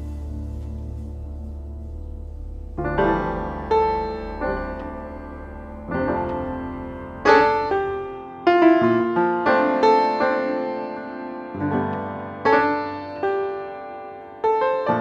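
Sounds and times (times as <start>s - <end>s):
low sustained drone: 0.0s - 8.5s
slow piano music: 0.0s - 15.0s.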